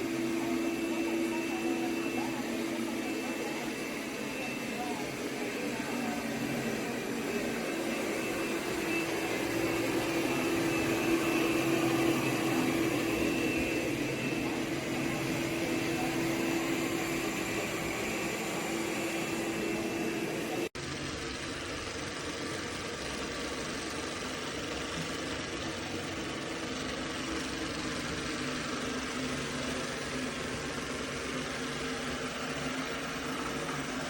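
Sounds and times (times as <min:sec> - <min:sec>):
robot vacuum motor whirring: 0:00.0 - 0:20.6
steady hum: 0:00.0 - 0:20.8.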